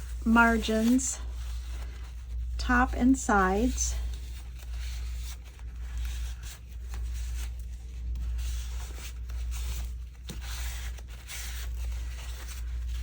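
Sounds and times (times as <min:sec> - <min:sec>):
steady low hum: 0:00.0 - 0:09.8
paper rustling: 0:00.0 - 0:13.0.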